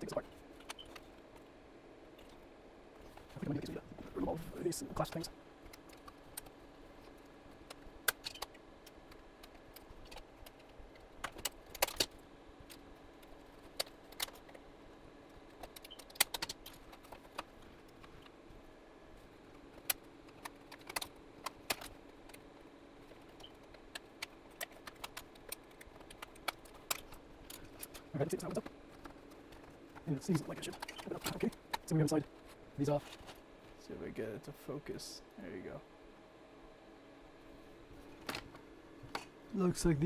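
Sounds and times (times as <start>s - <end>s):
faint steady background hum: 0.0s - 40.0s
clicks and taps of plastic parts: 7.7s - 14.6s, 15.5s - 18.4s, 19.8s - 22.4s, 23.1s - 31.9s.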